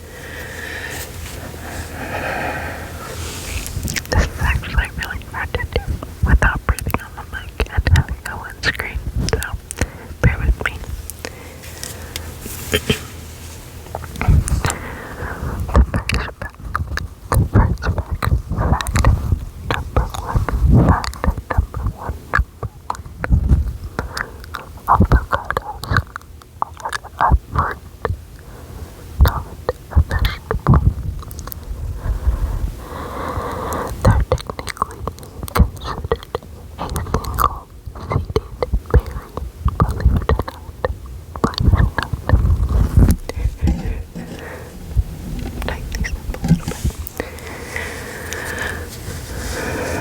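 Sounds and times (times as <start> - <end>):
close whispering: 0.0 - 13.2, 13.8 - 50.0
wet mouth clicks: 3.7 - 11.3, 13.9 - 14.8, 15.6 - 28.2, 29.2 - 32.2, 33.4 - 48.8
breath thumps on microphone: 41.6 - 47.5.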